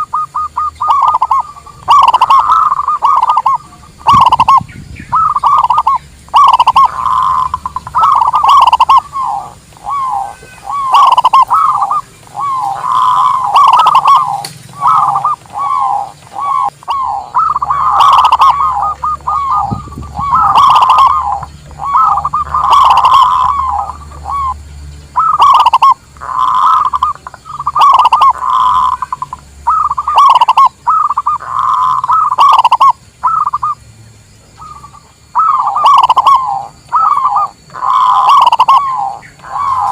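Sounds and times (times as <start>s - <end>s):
doves cooing: 0.0s - 33.8s, 34.5s - 39.9s.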